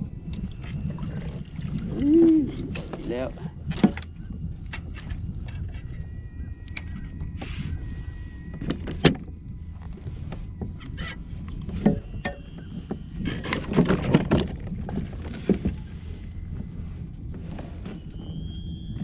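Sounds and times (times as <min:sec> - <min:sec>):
low rumble of wind and water: 0:00.0 - 0:19.0
gear knocking against a kayak: 0:08.5 - 0:18.2.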